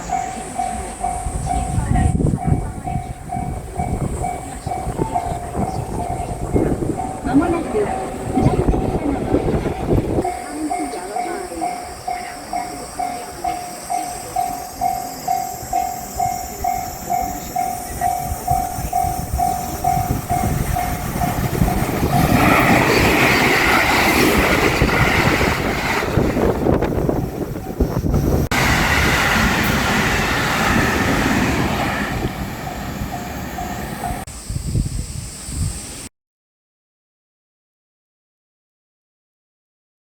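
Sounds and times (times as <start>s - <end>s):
level crossing bell clanging: 0.0s - 24.0s, 32.1s - 34.3s
train wheels clattering on rails: 0.0s - 34.3s.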